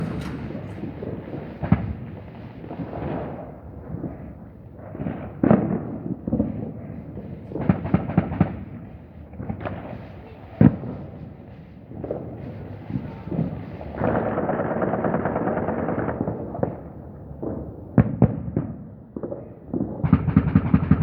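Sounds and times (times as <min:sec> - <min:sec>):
steady background rumble: 0:00.0 - 0:01.5
sharp bangs: 0:00.0 - 0:01.8.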